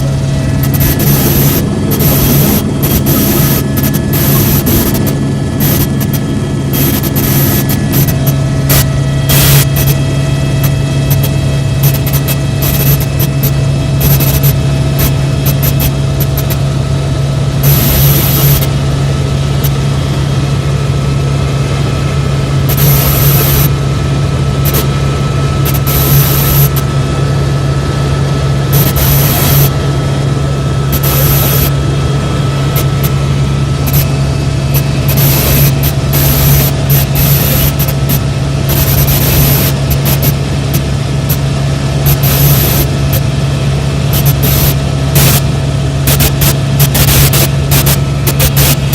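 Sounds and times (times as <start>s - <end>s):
rushing air noise: 0.0s - 16.7s
helicopter rotor and turbine drone: 0.0s - 48.9s.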